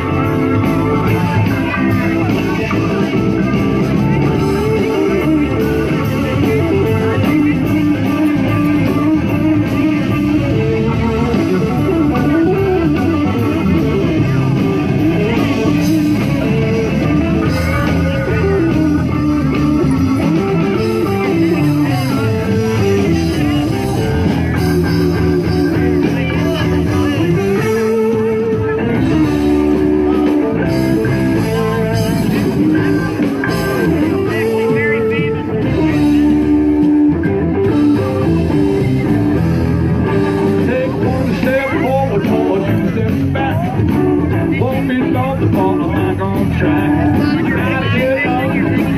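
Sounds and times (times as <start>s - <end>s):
blues band playing: 0.0s - 48.9s
electric guitar melody: 0.0s - 48.9s.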